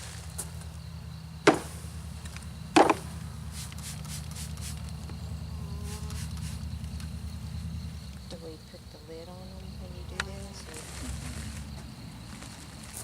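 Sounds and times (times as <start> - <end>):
honey bees humming: 0.0 - 13.0
sharp knocks: 1.4 - 1.8, 2.8 - 3.0.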